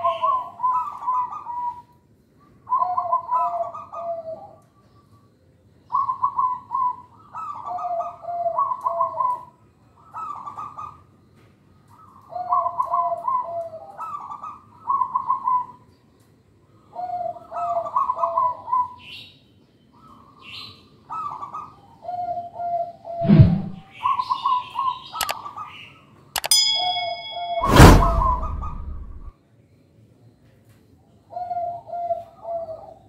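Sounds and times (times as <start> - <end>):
dove cooing: 2.7 - 4.6, 5.9 - 9.5, 31.4 - 33.0.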